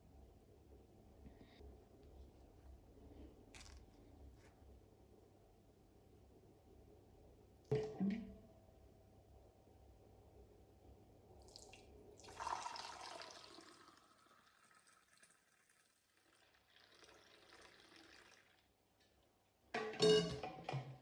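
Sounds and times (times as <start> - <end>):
faint running tap water: 11.4 - 18.8.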